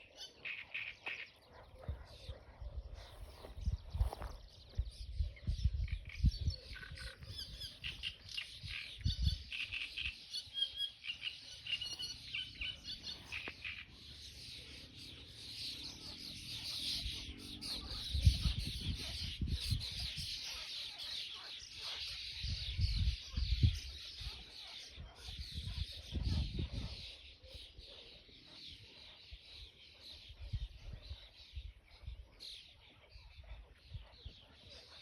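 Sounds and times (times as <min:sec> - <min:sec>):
songbirds chirping: 0:00.0 - 0:35.0.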